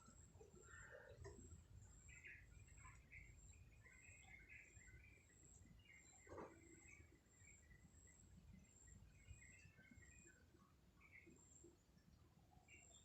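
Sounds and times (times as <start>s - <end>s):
faint bird chirps: 0.0s - 13.0s.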